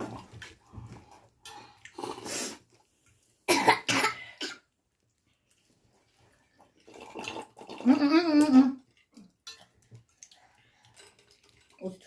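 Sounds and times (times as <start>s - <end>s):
person coughing: 3.5s - 4.6s.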